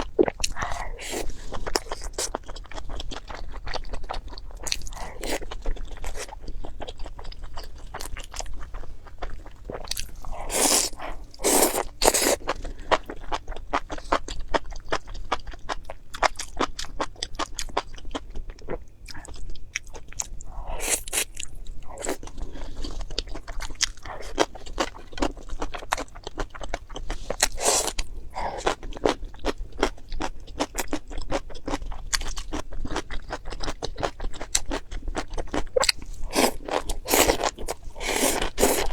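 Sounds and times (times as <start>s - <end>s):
person crunching and chewing food: 0.0s - 38.9s.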